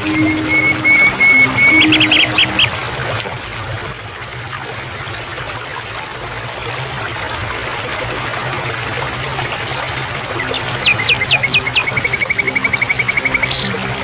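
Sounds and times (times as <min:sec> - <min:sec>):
stream water running: 0:00.0 - 0:14.0.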